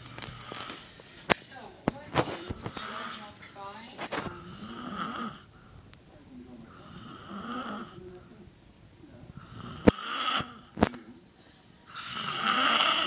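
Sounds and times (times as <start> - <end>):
man snoring loudly: 4.5 - 5.5, 6.8 - 8.0, 9.5 - 10.7, 11.9 - 13.0.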